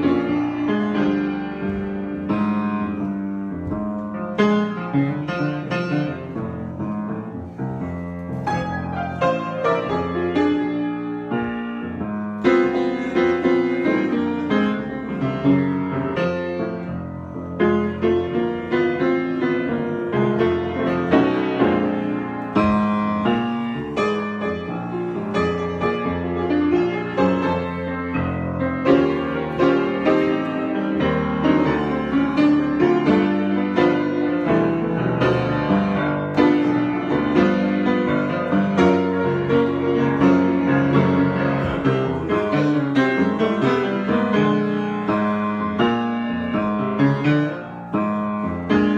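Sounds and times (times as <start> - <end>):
solo piano improvisation: 0.0 - 48.9.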